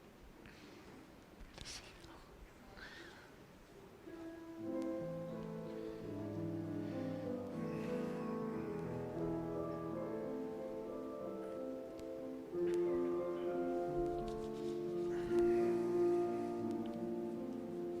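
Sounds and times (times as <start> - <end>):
slow keyboard music with held chords: 4.1 - 18.0.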